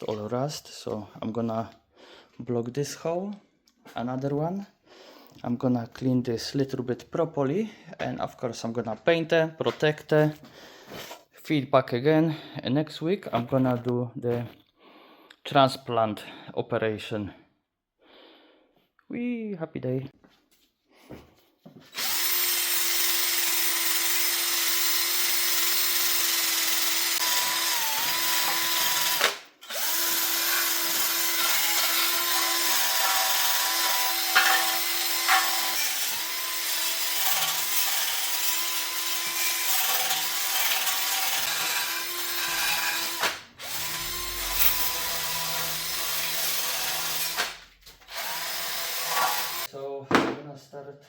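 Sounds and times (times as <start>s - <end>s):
power drill wire brush scraping metal: 21.9s - 49.7s.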